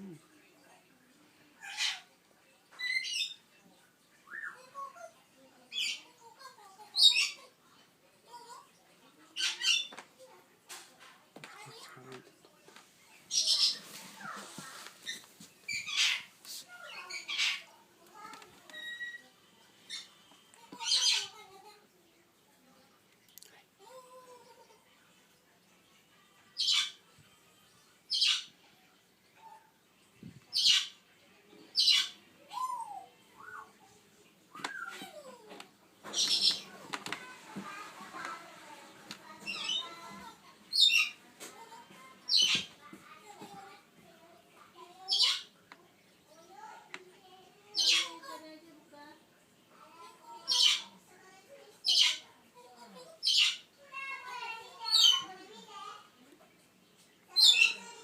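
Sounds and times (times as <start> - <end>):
parrot chick squawking: 13.3 - 13.8, 15.7 - 16.3, 20.8 - 21.4, 36.1 - 36.8, 47.8 - 48.1.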